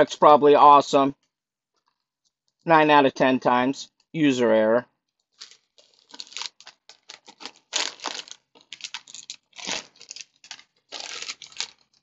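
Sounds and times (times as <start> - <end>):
chip bag crinkling: 5.1 - 12.0.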